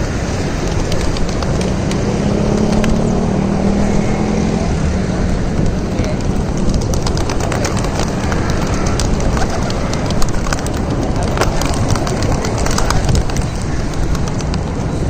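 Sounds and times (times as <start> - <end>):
vehicle passing: 0.0 - 15.0
wind rumble on microphone: 0.0 - 15.0
light clicks and flutters: 0.6 - 3.1, 5.6 - 15.0.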